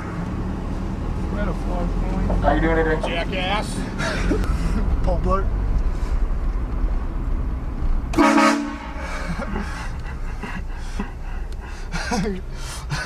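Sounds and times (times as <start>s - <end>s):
low vehicle rumble: 0.0s - 13.0s
train horn blast: 8.1s - 9.1s.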